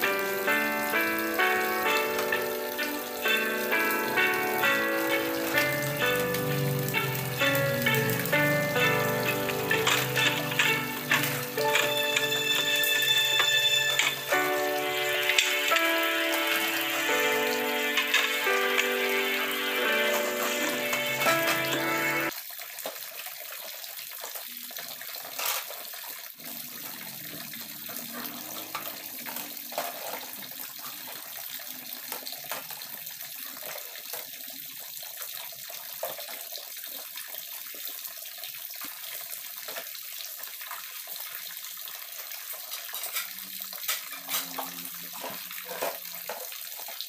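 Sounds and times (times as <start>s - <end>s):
background music: 0.0s - 22.3s
small knocks and splashes: 26.8s - 31.2s.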